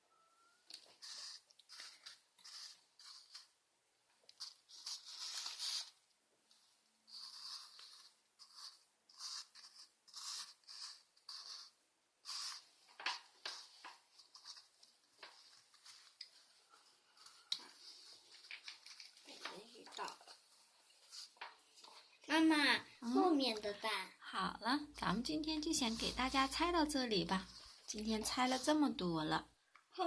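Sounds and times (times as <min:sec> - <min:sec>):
plastic toy pieces rustling and clicking: 0:17.5 - 0:20.4.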